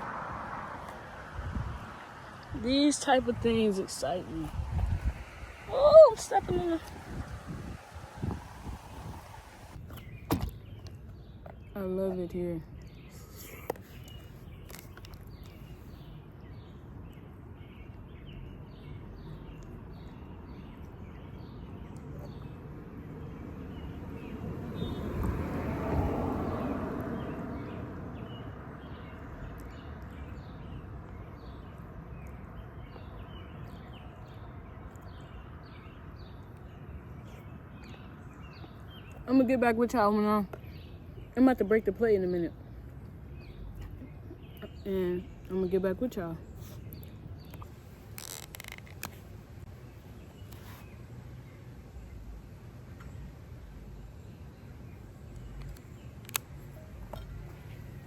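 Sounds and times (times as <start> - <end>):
low outdoor rumble: 0.0 - 9.8
rushing noise: 0.0 - 9.8
wind on microphone: 0.0 - 9.8
small birds chirping: 0.8 - 58.0.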